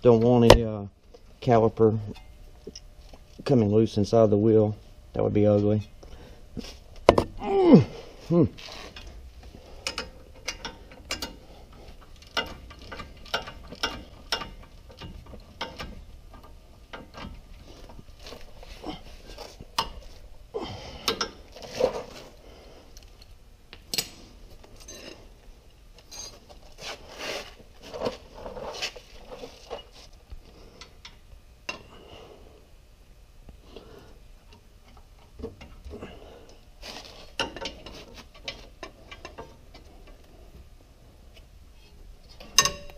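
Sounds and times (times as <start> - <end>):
metal tools clinking: 24.8 - 25.2, 26.0 - 26.5.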